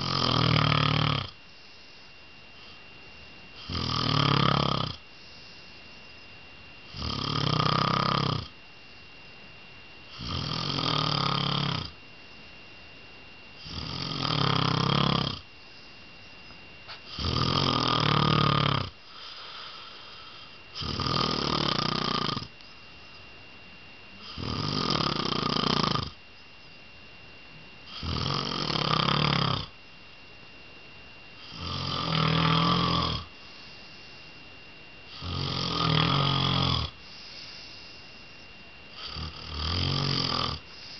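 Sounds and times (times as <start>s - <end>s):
man snoring: 0.0s - 1.4s, 3.6s - 5.0s, 6.9s - 8.6s, 10.1s - 12.0s, 13.6s - 15.5s, 16.9s - 22.5s, 24.2s - 26.2s, 27.9s - 29.7s, 31.4s - 33.7s, 35.1s - 38.0s, 38.9s - 40.9s.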